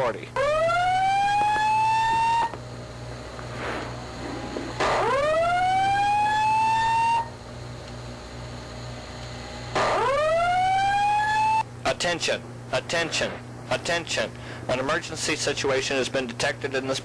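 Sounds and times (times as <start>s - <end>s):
fire alarm whoop tone: 0.4s - 2.6s, 4.8s - 7.4s, 9.8s - 11.6s.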